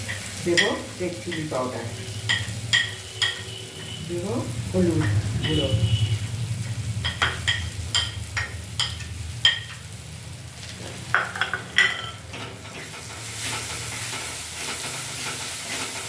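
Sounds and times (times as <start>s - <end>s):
oil sizzling: 0.0s - 16.0s
metal utensil clinking on pan: 0.1s - 3.6s, 11.1s - 16.0s.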